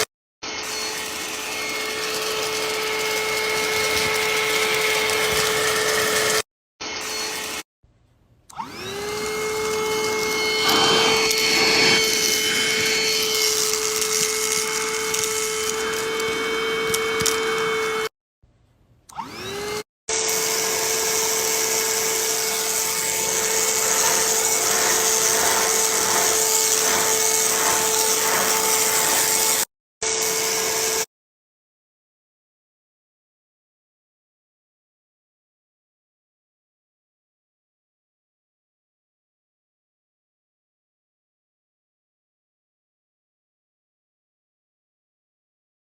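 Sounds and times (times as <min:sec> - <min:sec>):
vacuum cleaner running: 0:00.0 - 0:07.7, 0:08.5 - 0:18.1, 0:19.1 - 0:31.1.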